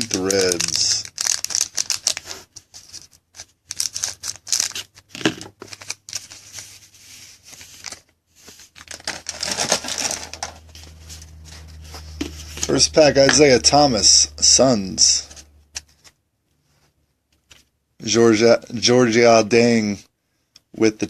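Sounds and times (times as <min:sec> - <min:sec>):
card pack wrapper tearing and crinkling: 0:00.0 - 0:06.7, 0:07.4 - 0:11.2.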